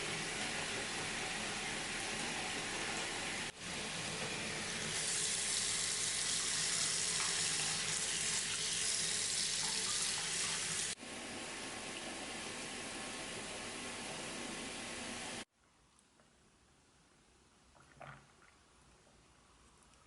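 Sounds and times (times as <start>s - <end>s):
tap water running into bath: 0.0s - 15.5s.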